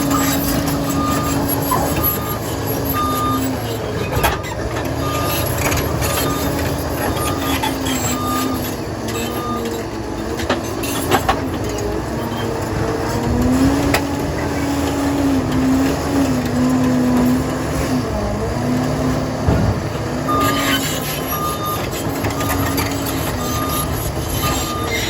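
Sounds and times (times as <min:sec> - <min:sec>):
reversing alarm beeping: 0:00.0 - 0:09.8, 0:20.2 - 0:25.0
tracks squealing: 0:00.0 - 0:11.4, 0:19.5 - 0:25.0
dozer diesel engine under load: 0:00.0 - 0:25.0.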